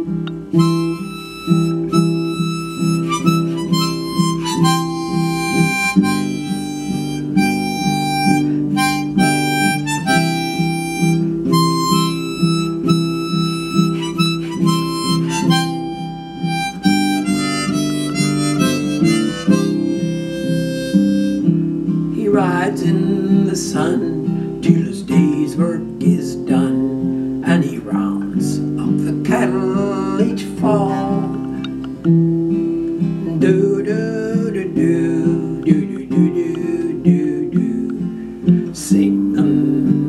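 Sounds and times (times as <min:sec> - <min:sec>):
lead melody: 0:00.0 - 0:22.1
strummed chords: 0:00.0 - 0:40.0.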